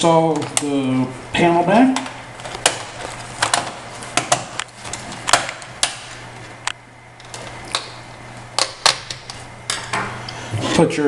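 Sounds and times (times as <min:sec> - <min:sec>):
plastic clips snapping: 0:02.0 - 0:08.0, 0:08.6 - 0:10.0.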